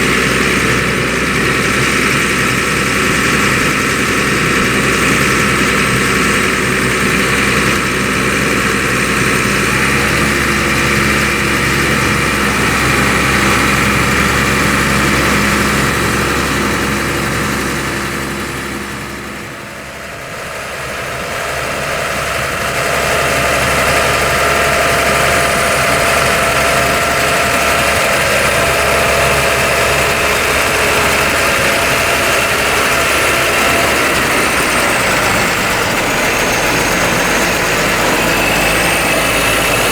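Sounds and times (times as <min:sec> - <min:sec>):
harvester machinery whirring: 0:00.0 - 0:39.9
tractor engine running: 0:00.0 - 0:39.9.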